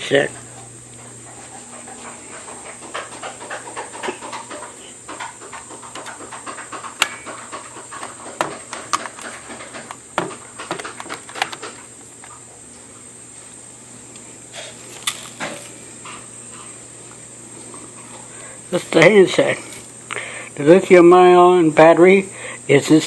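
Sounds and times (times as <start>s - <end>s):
plastic clicks and rattles: 8.0s - 11.8s.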